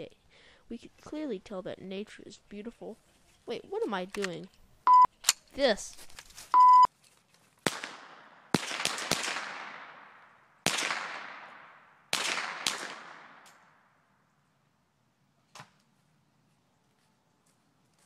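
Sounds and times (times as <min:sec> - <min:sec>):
gunshots echoing: 0:07.6 - 0:13.9.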